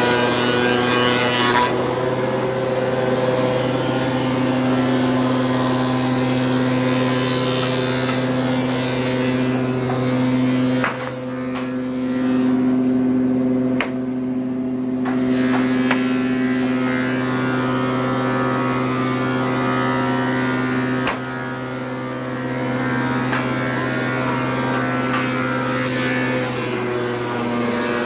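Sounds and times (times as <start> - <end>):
wood moulder motor hum: 0.0 - 28.0
sharp knocks: 10.8 - 11.7.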